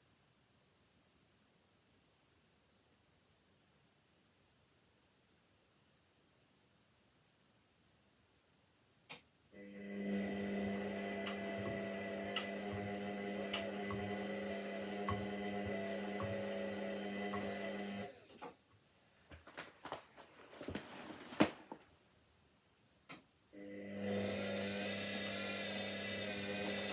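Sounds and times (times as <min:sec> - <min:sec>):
washing machine humming: 0:09.6 - 0:18.4, 0:23.6 - 0:26.9.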